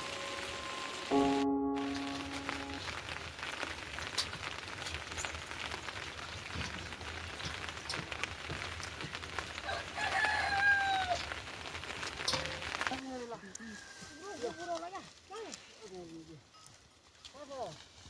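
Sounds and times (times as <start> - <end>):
heavy rain falling: 0.0 - 13.0
rooster crowing: 9.6 - 11.3, 13.4 - 14.7.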